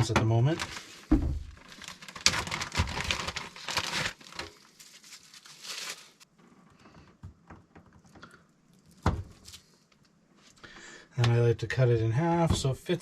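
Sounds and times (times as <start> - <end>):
wrapper crinkling: 0.5 - 6.3.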